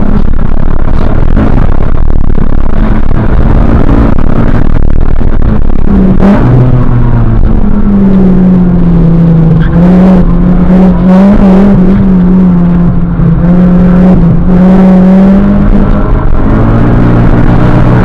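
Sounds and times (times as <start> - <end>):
car engine revving high: 0.0 - 18.0.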